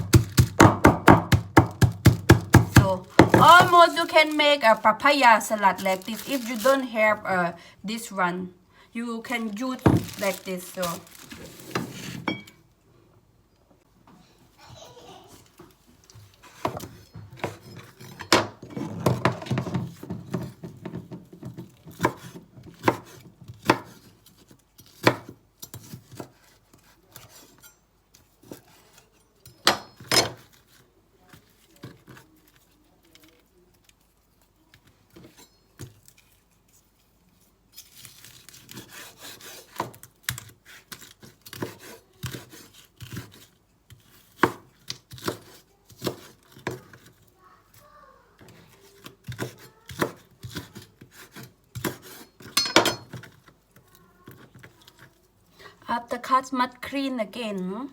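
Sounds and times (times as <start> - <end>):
utensils tapping on wooden board: 0.1 - 3.8.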